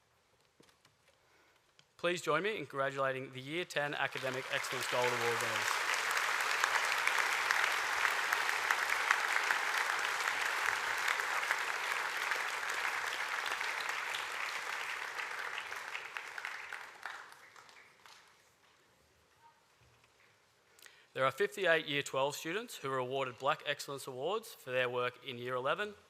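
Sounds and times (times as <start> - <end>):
audience applauding: 3.8 - 18.4.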